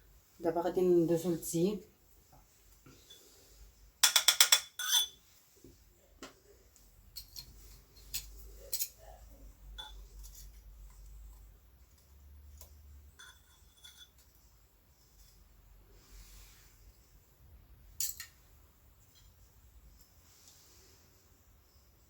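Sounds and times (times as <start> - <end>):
kitchen utensils and dishes clicking: 4.0 - 5.2, 7.2 - 9.1.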